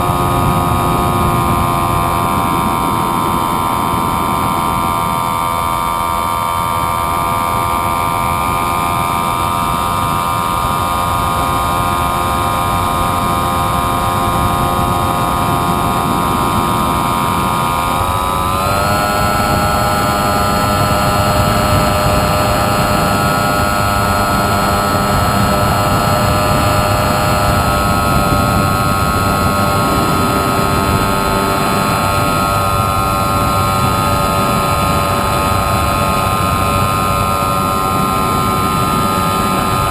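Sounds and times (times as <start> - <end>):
model airplane motor whine: 0.0 - 39.9.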